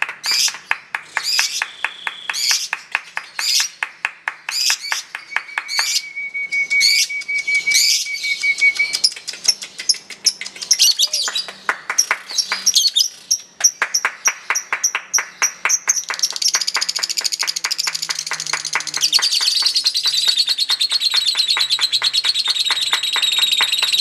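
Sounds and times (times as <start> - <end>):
lovebird chirping and trilling: 0.3 - 3.8, 4.5 - 24.0
thin steady whistle: 5.4 - 9.0.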